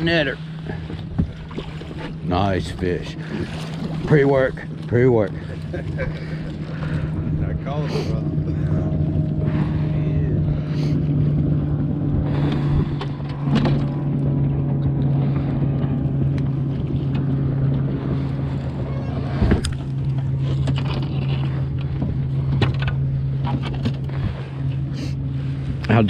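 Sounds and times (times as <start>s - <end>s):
boat motor humming: 0.0s - 26.0s.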